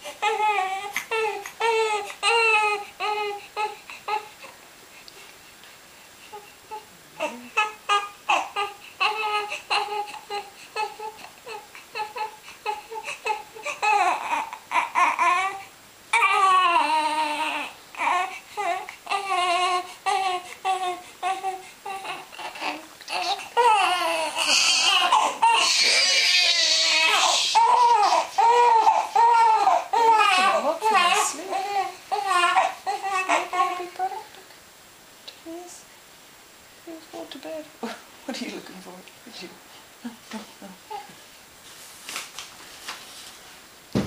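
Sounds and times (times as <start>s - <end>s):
baby crying: 0.0s - 4.4s, 6.3s - 34.2s.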